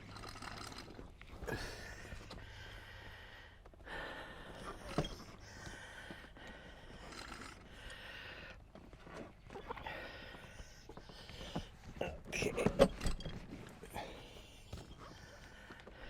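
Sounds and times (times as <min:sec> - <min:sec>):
man breathing hard: 0:01.4 - 0:08.7, 0:09.8 - 0:12.0, 0:13.8 - 0:16.0.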